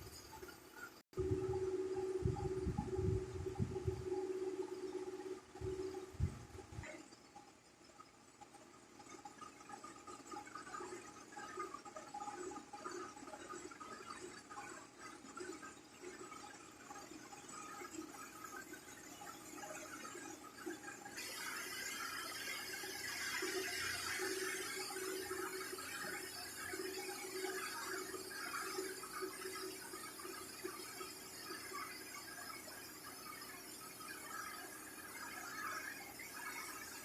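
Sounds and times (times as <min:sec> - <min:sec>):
lathe machining: 0:21.0 - 0:37.0.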